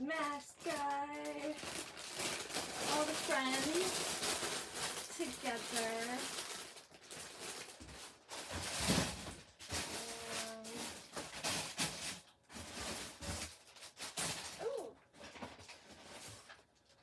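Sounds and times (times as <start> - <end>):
packaging rustling and crinkling: 0.0 - 17.0.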